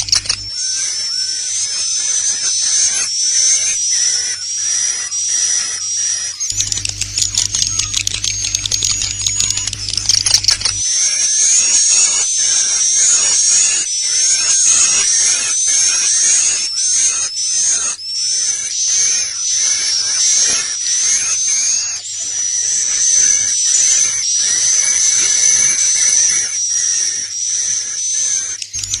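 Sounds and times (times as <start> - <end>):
rapid high clicking: 0.0 - 0.5, 6.5 - 12.6, 28.8 - 29.0
swiftlet calls: 0.0 - 5.0, 5.6 - 27.3, 28.1 - 29.0.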